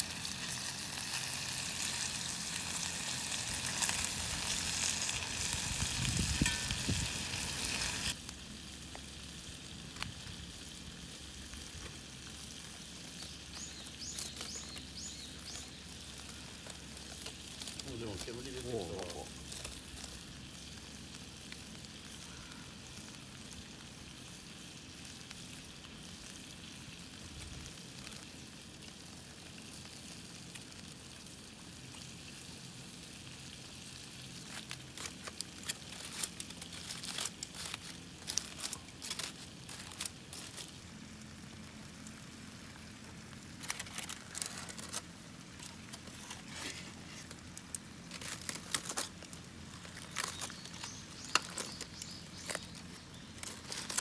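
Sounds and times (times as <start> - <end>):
campfire hissing: 0.0 - 54.0
sharp crackles and crinkles: 0.0 - 54.0.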